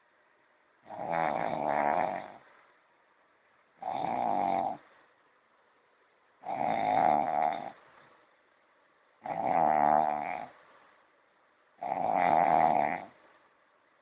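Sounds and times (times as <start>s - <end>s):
person snoring: 0.9s - 2.4s, 3.8s - 4.8s, 6.4s - 7.8s, 9.2s - 10.6s, 11.8s - 13.2s.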